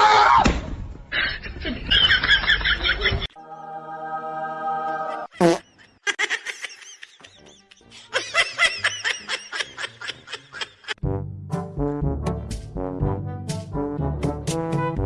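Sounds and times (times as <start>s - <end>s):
high-pitched giggling laughter: 5.0s - 11.0s
brass music: 11.0s - 15.0s.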